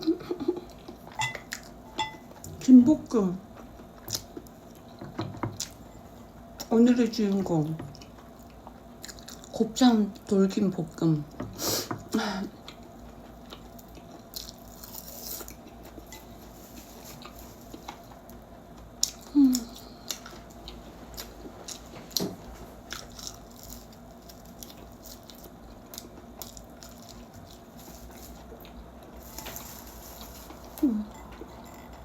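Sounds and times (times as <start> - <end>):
chewing and biting food: 7.8 - 9.6, 12.6 - 16.1, 17.1 - 32.0.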